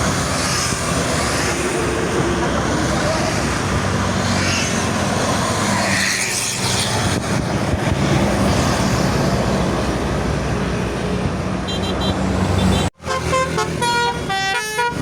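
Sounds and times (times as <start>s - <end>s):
road and tyre noise: 0.0s - 15.0s
bus engine droning: 7.1s - 15.0s.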